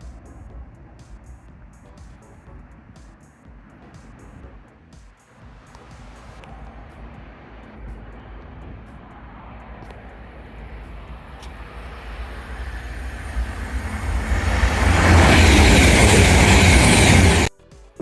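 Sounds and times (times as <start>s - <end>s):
high-speed train passing: 6.1s - 17.5s.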